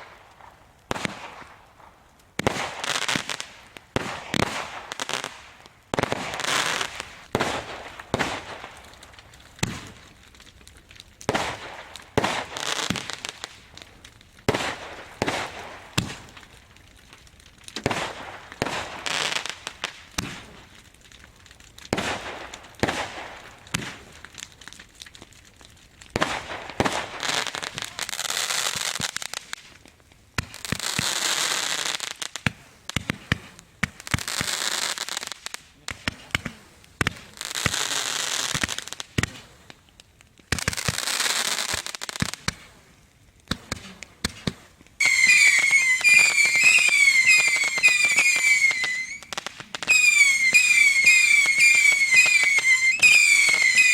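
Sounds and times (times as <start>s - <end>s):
firework bangs: 0.0s - 10.1s, 11.2s - 13.6s, 14.4s - 16.5s, 17.8s - 20.6s, 21.9s - 24.2s, 26.1s - 29.3s, 43.5s - 53.9s
firework crackling and hissing: 0.0s - 53.9s.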